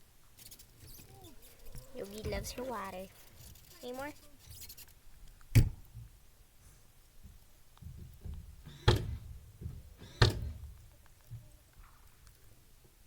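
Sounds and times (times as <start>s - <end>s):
faint rustling: 0.0s - 13.0s
sharp knocks: 7.8s - 10.8s.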